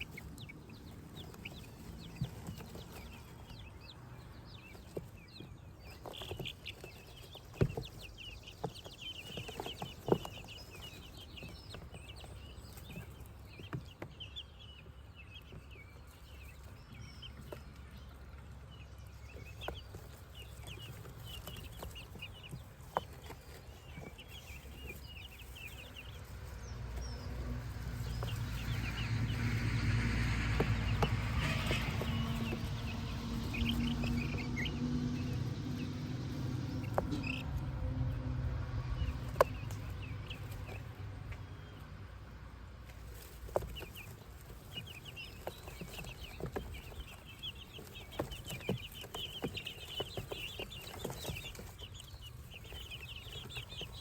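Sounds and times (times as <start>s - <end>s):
baby chicks peeping: 0.0s - 54.0s
low rumbling noise: 26.0s - 42.6s.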